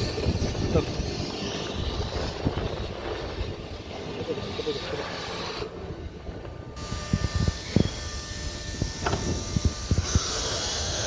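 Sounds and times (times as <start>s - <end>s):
machine drives whining: 6.4s - 11.0s
steady hiss: 8.8s - 11.0s.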